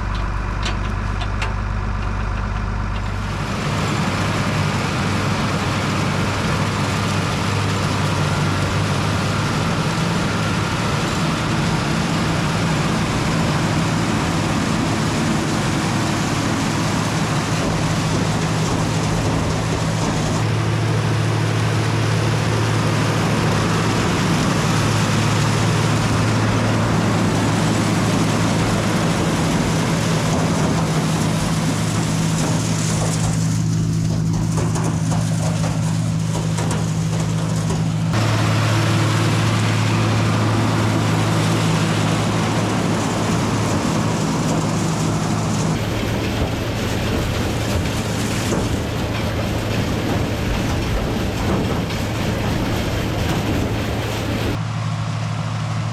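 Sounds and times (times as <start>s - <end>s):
tractor engine running: 0.0s - 55.9s.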